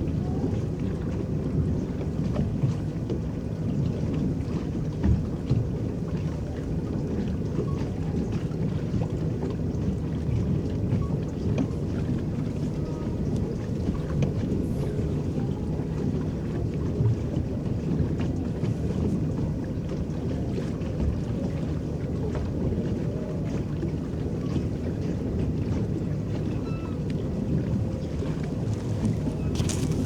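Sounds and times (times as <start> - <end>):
water churning against hull: 0.0 - 30.0
small splashes and ticks: 23.4 - 30.0.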